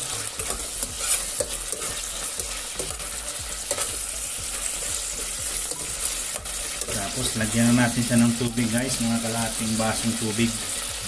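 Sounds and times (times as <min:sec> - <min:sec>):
spatula scraping a pot: 0:00.0 - 0:08.2
chicken sizzling in a pot: 0:00.0 - 0:11.0.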